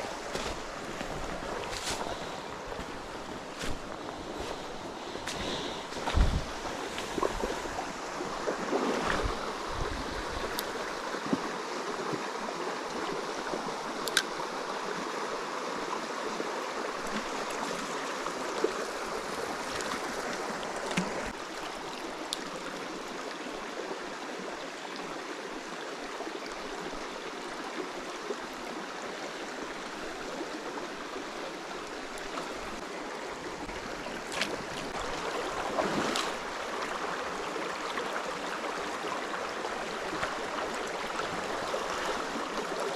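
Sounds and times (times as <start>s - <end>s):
stream water flowing: 0.0s - 42.9s.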